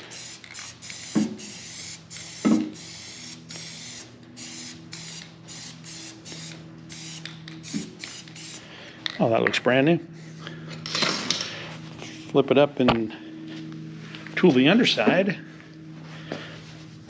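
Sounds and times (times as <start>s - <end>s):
spray paint can hissing: 0.0s - 8.6s.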